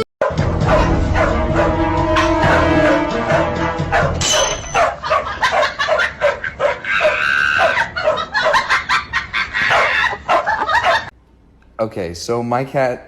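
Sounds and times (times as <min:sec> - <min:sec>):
dog barking: 0:00.2 - 0:08.9, 0:09.6 - 0:11.1.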